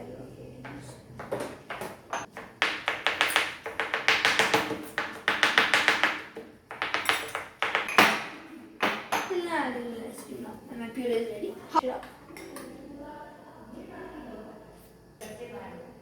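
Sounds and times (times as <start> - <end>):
utensil knocking against a bowl: 0.6 - 9.3.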